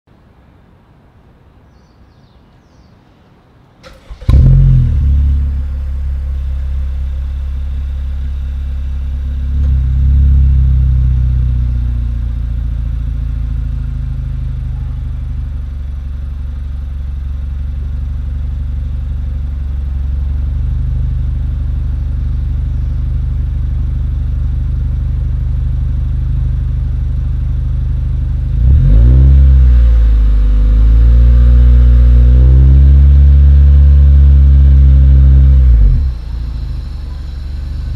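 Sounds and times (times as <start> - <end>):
car engine starting and idling: 3.8 - 37.9
car engine revving: 4.0 - 18.7, 28.2 - 37.9.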